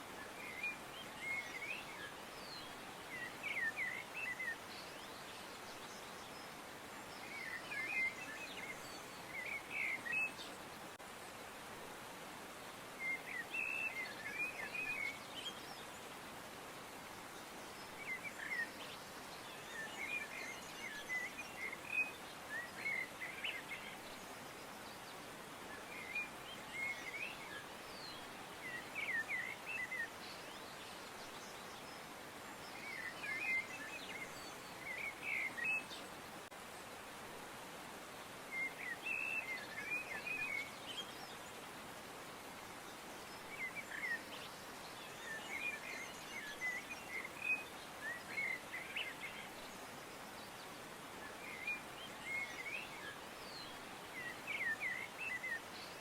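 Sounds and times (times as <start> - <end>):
songbirds chirping: 0.0 - 56.0
steady background hiss: 0.0 - 56.0.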